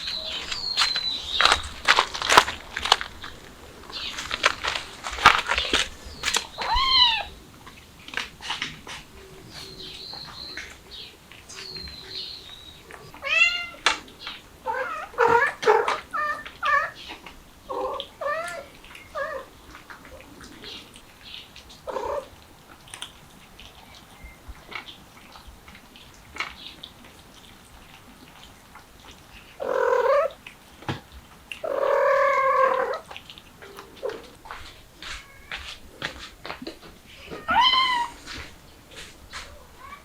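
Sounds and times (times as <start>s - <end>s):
kittens mewing: 5.5s - 7.4s, 14.6s - 17.0s, 31.6s - 33.2s, 35.0s - 35.7s, 37.1s - 38.5s
cat meowing: 6.5s - 7.4s, 13.1s - 13.9s, 14.6s - 17.0s, 17.7s - 19.5s, 35.0s - 35.8s, 37.1s - 38.5s, 39.5s - 40.0s.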